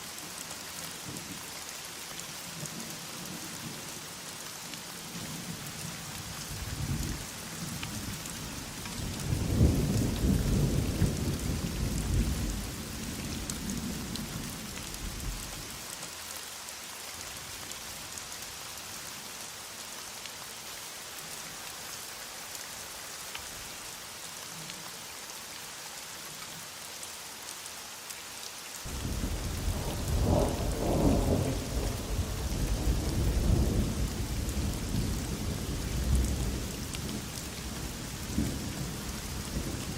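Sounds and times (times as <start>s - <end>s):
heavy rain falling: 0.0s - 39.9s
rolling thunder: 28.9s - 36.6s.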